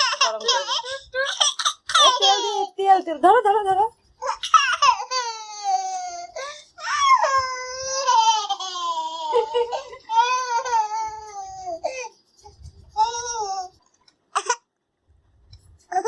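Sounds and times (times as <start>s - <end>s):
baby crying: 4.2s - 12.1s.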